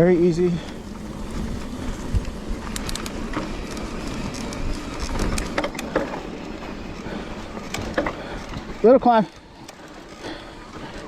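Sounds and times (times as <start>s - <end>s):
bike clicking and rattling: 0.0s - 11.0s
bike tyres on dirt trail: 0.0s - 11.0s
wind noise: 0.6s - 8.9s.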